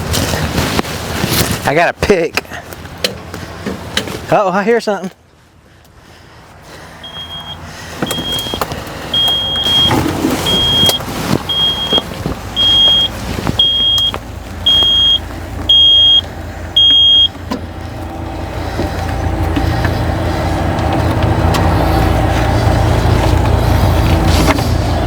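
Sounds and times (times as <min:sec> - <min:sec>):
low engine rumble: 0:05.2 - 0:25.0
high-pitched warning beeps: 0:07.0 - 0:12.0, 0:12.6 - 0:17.4.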